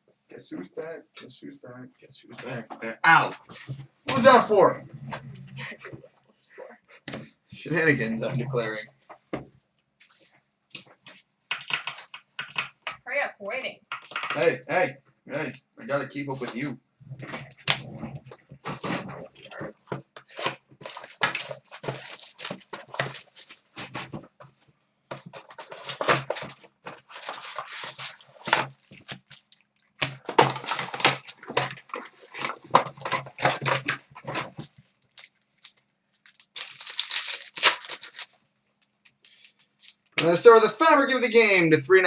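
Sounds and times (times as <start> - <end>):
wrappers ripping and crinkling: 17.2 - 24.2, 25.1 - 40.6.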